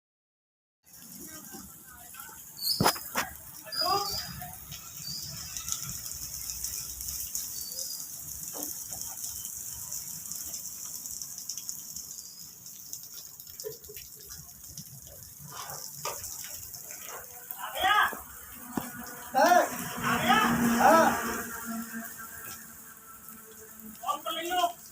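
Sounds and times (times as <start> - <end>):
rushing water hiss: 0.9 - 24.9.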